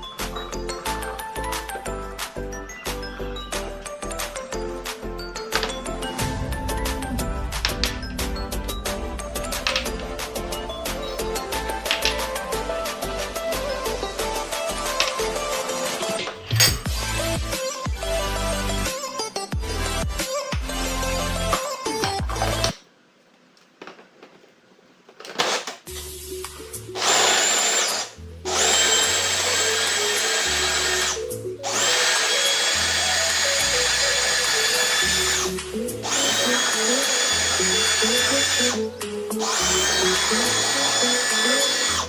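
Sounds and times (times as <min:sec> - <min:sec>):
background music with bass: 0:00.0 - 0:22.7, 0:28.2 - 0:42.0
food processor motor whining: 0:27.0 - 0:42.0.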